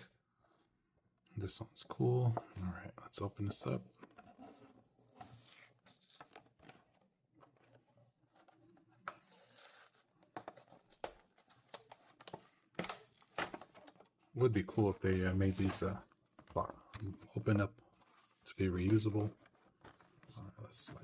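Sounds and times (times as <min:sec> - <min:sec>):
card and plastic tearing: 0:05.1 - 0:06.9, 0:09.1 - 0:14.1.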